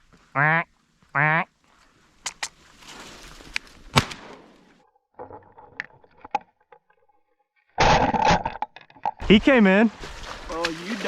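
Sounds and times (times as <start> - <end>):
rustling: 1.6 - 4.8
shotgun blast: 3.9 - 4.6.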